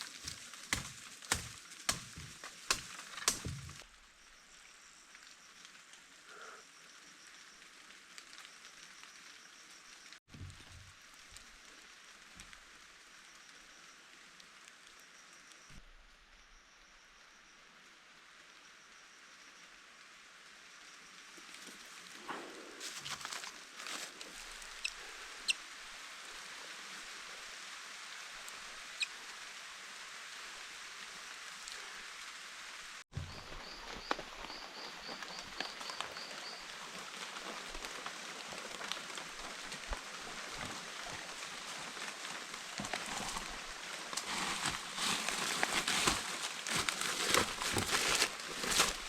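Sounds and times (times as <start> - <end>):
light crackling and rustling: 0.0 - 4.1, 21.3 - 29.0, 33.1 - 49.0
steady forest hiss: 0.0 - 49.0.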